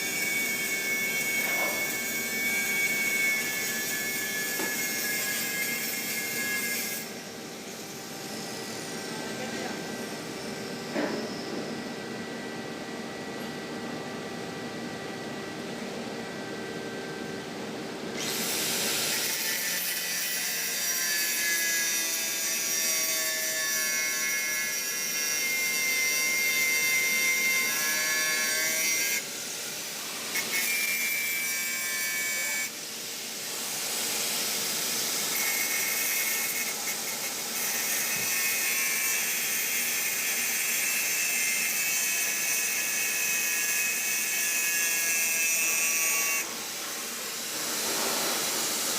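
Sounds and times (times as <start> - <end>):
electric arc welding hiss: 45.7 - 48.9.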